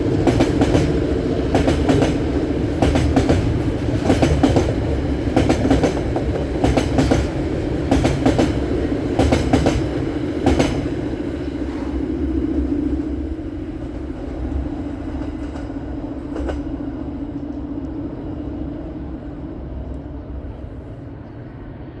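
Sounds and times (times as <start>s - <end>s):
train wheels clicking over rail joints: 0.0s - 12.1s, 14.8s - 17.7s
diesel locomotive rumble: 0.0s - 21.9s.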